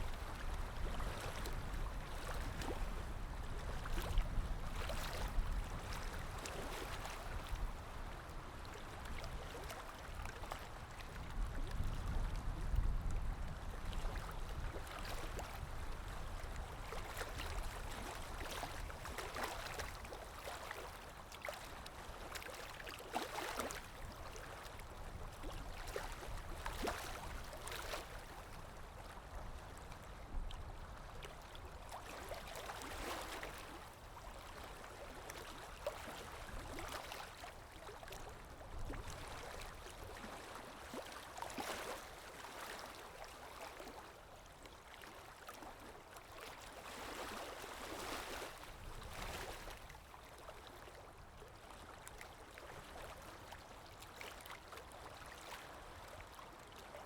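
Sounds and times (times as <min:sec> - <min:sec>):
sea waves lapping on shore: 0:13.8 - 0:56.8.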